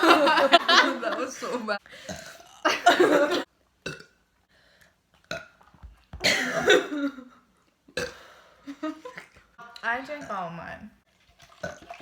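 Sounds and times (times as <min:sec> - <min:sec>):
girl burping: 0:02.0 - 0:04.1, 0:06.2 - 0:07.3.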